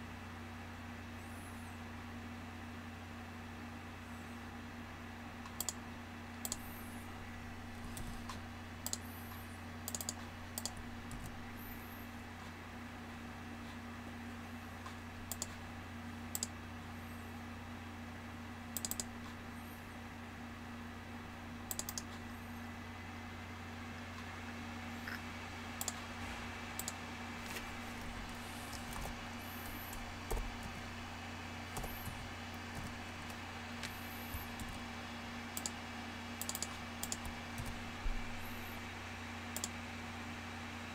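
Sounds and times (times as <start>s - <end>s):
low electrical hum: 0.0s - 40.9s
keyboard and mouse clicks: 5.4s - 5.8s, 6.4s - 6.7s, 7.8s - 9.1s, 9.8s - 11.4s, 14.8s - 15.6s, 16.3s - 16.6s, 18.8s - 19.4s, 21.7s - 22.2s, 25.8s - 26.1s, 26.8s - 30.9s, 31.7s - 34.8s, 35.5s - 35.8s, 36.4s - 37.8s, 39.6s - 39.8s
computer keyboard clicks: 5.5s - 5.8s, 9.9s - 11.4s, 15.3s - 15.6s, 16.3s - 16.5s, 18.8s - 19.1s, 21.7s - 22.2s, 25.8s - 26.0s, 35.6s - 35.8s, 36.4s - 37.8s, 39.6s - 39.8s.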